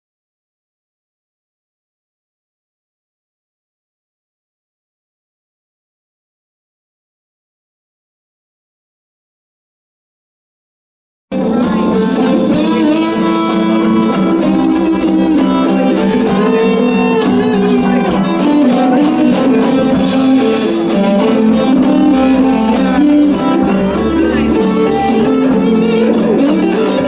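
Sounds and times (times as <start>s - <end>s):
guitar-led music with beat: 11.3s - 27.0s.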